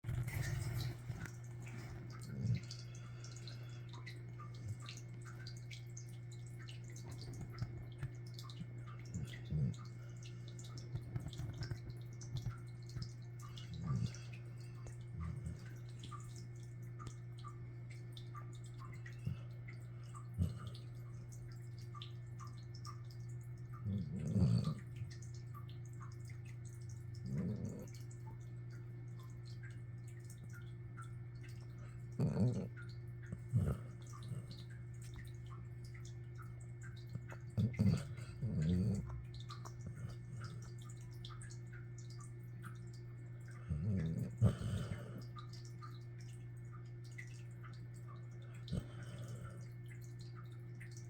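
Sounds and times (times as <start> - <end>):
dog snoring: 0.1 - 2.7, 9.2 - 9.8, 13.6 - 14.2, 20.4 - 20.8, 23.8 - 25.1, 27.2 - 27.9, 32.2 - 34.6, 37.5 - 40.6, 43.7 - 45.4, 48.6 - 49.6.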